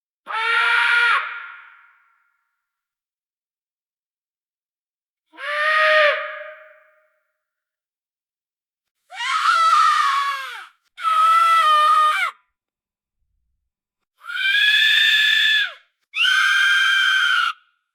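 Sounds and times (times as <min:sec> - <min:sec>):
toddler screaming: 0:09.1 - 0:12.4.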